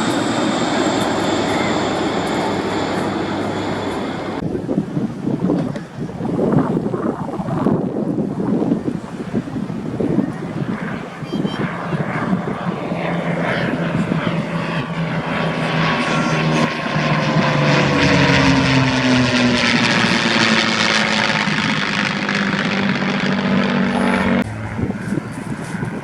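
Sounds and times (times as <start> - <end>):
propeller aircraft flying past: 0.0 - 5.7, 6.5 - 26.0.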